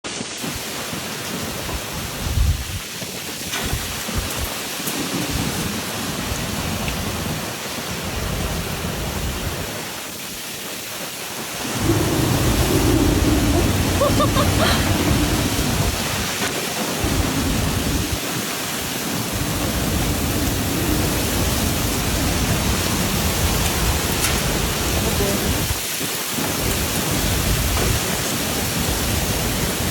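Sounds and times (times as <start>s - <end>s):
heavy rain: 0.0s - 29.9s
deep rumble of wind: 11.7s - 16.3s.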